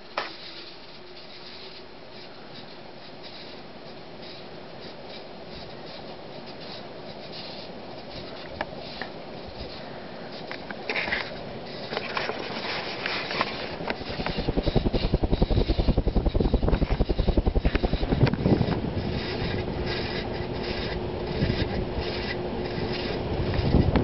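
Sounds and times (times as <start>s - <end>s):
ceiling fan bearings hissing: 0.0s - 24.0s
rhythmic low throbbing: 13.9s - 24.0s.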